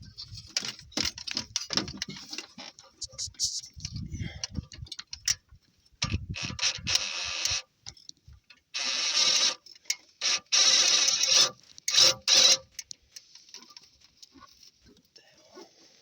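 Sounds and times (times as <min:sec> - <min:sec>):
power tool running a bolt: 0:10.2 - 0:12.6.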